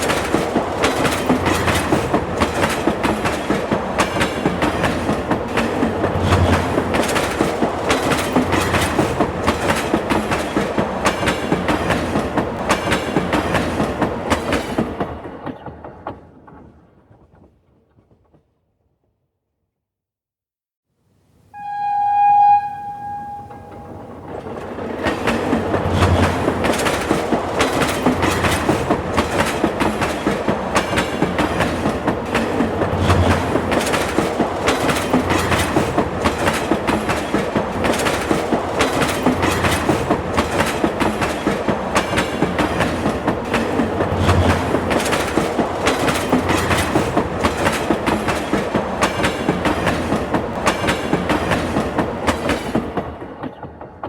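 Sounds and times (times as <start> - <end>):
train wheels clickety-clack: 0.0 - 18.6, 23.6 - 54.0
train horn note: 21.6 - 24.3.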